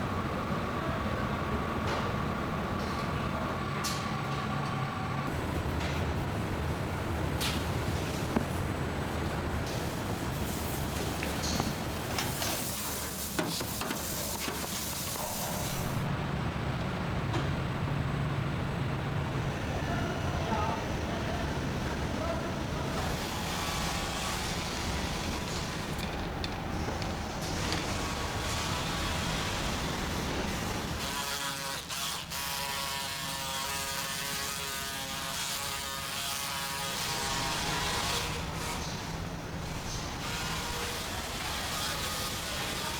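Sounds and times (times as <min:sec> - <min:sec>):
steady machine noise: 0:14.8 - 0:31.0.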